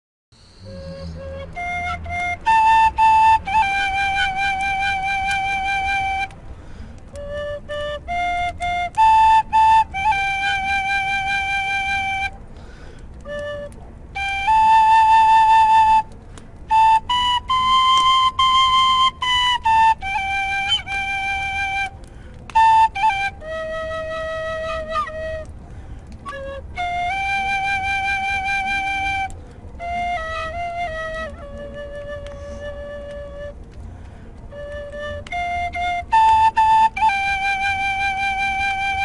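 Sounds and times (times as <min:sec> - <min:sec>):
flute playing slow melody: 0:00.4 - 0:39.0
player breathing: 0:12.5 - 0:13.1.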